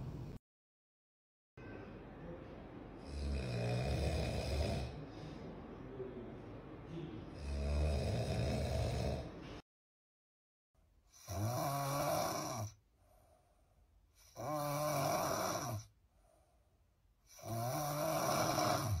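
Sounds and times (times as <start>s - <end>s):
loud pig-like snoring: 3.0s - 5.0s, 7.4s - 9.3s, 11.2s - 12.8s, 14.3s - 15.9s, 17.3s - 19.0s
faint breath: 4.9s - 5.8s, 12.9s - 14.4s, 16.0s - 17.4s.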